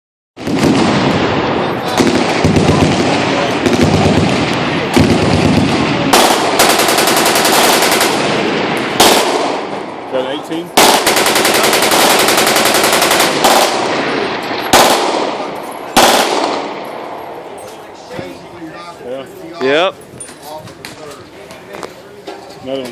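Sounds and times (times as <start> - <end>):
machine guns firing bursts: 0.4 - 1.2, 1.9 - 9.7, 10.8 - 16.7.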